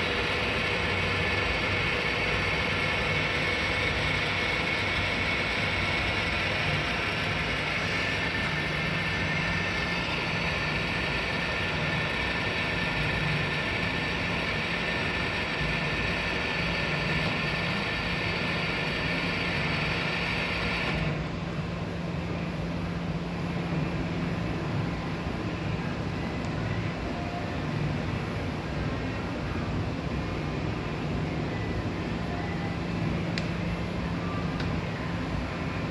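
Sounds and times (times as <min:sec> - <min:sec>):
high hissing whine: 0:00.0 - 0:35.9
lathe low hum: 0:00.0 - 0:35.9.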